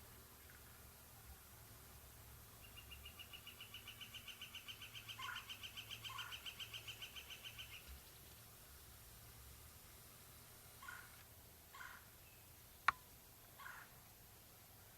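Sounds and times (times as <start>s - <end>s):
short lower bird calls: 2.6s - 7.9s, 13.6s - 13.9s.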